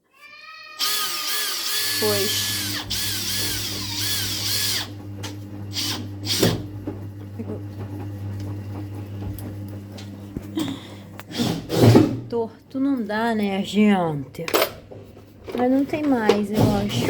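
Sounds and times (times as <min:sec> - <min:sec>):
screws and hardware clicking: 0:00.8 - 0:04.9
high whirring: 0:00.8 - 0:06.7.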